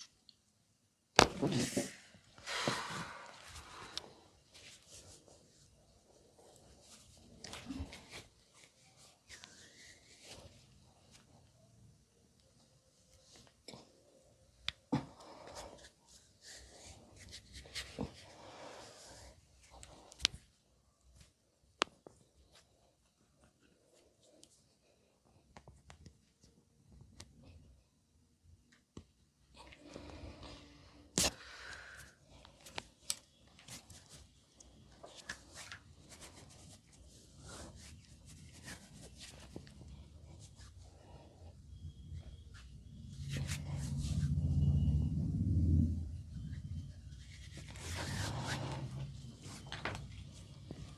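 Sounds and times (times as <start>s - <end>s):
hands rubbing hair and skin: 1.4s - 11.4s, 15.2s - 20.5s, 32.7s - 40.8s, 47.1s - 50.9s.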